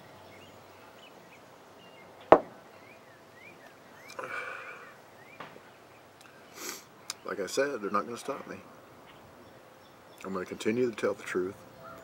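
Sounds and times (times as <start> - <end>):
sharp knock: 2.3 - 2.6.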